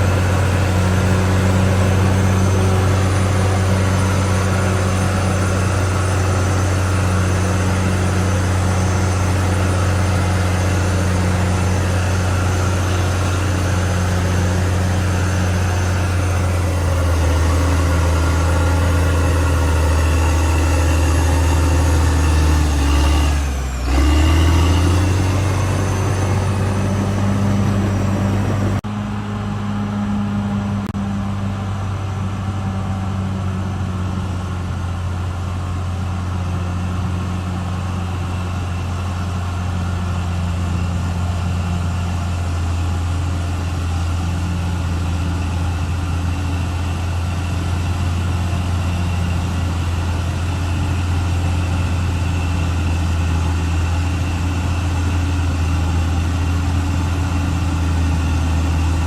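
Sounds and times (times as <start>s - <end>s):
bulldozer diesel engine running: 0.0s - 59.0s.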